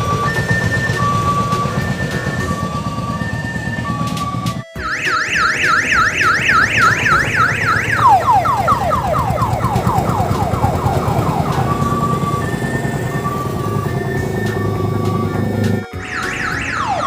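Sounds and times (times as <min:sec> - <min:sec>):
diesel engine chugging: 0:00.0 - 0:17.0
electronic siren horn: 0:00.0 - 0:17.0.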